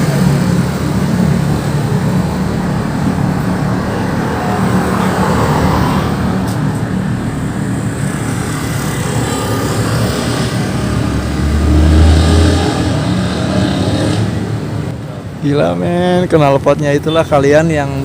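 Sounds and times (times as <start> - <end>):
bus engine rumble passing: 0.0 - 18.0.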